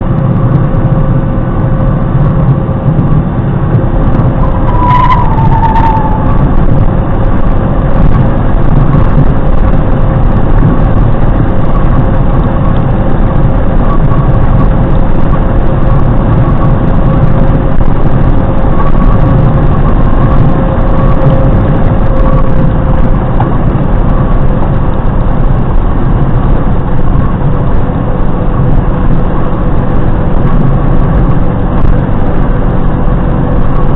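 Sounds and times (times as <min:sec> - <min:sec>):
vehicle rumble: 0:00.0 - 0:33.9
air horn blast: 0:04.4 - 0:06.6.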